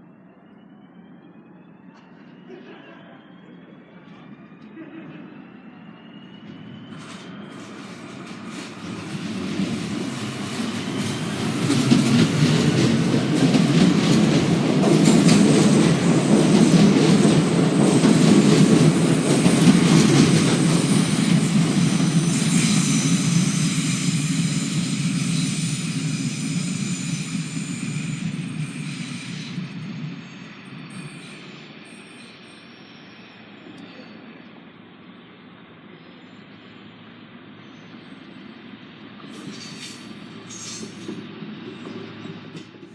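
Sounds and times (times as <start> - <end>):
passenger train rumbling past: 0.0 - 42.9.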